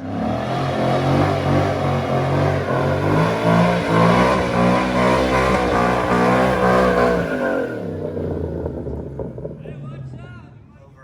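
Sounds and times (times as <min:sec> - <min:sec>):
truck engine at high revs: 0:00.0 - 0:09.8.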